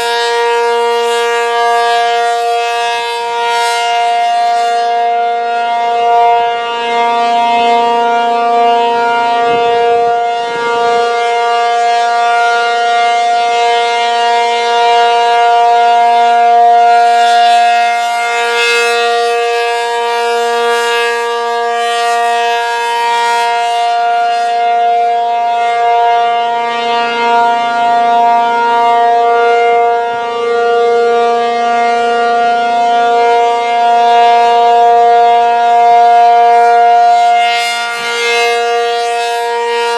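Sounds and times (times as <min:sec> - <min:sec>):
steady outdoor warning siren: 0:00.0 - 0:39.9.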